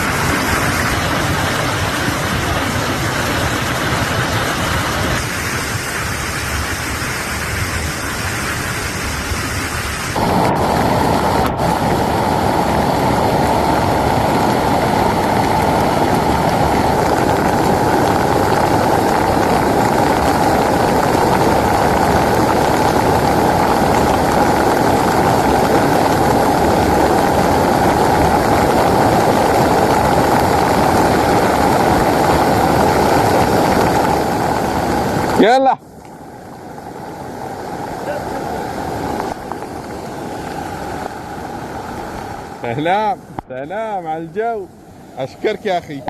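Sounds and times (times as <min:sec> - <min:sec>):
heavy rain falling: 0:00.0 - 0:46.0.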